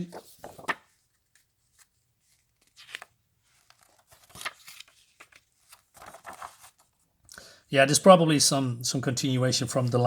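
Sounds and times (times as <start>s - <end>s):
book pages turning: 0.0s - 7.0s.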